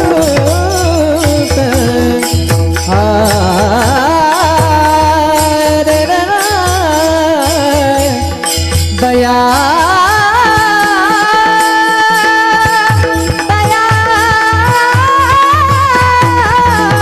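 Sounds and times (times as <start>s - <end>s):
person singing devotional melody: 0.0s - 17.0s.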